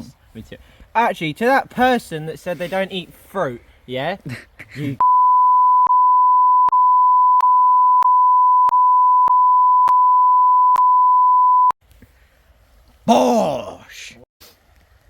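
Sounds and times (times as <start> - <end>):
censor bleep tone: 5.0 - 11.8.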